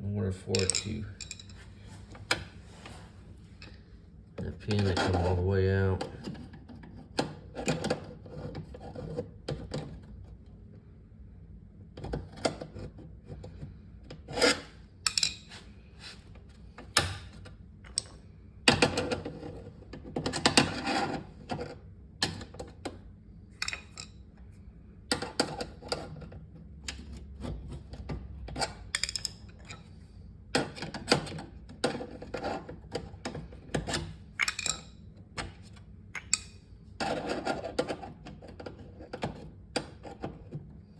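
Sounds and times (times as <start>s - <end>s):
screwdriver prying and scraping plastic: 37.0s - 40.7s.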